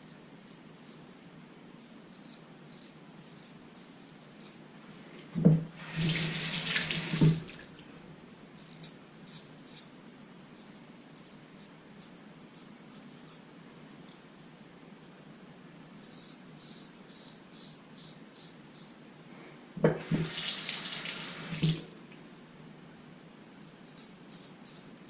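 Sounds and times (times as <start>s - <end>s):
sink tap knock: 5.4s - 5.7s, 19.8s - 20.4s
water running from tap: 5.8s - 7.8s, 19.9s - 21.9s.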